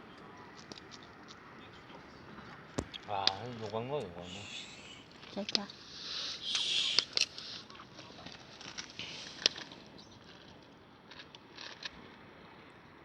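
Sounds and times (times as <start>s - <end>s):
campfire crackling and popping: 2.7s - 12.0s.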